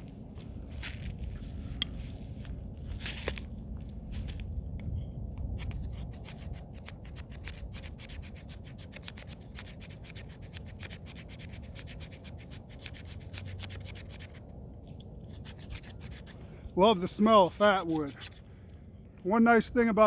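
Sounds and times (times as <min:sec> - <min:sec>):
knife scraping wood shavings: 0:05.7 - 0:14.4, 0:15.3 - 0:16.4.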